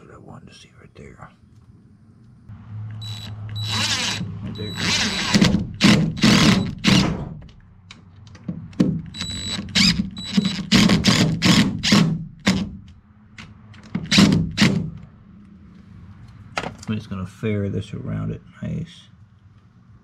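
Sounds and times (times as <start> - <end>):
power driver driving screws: 3.0 - 7.3, 9.1 - 12.8, 13.8 - 14.9.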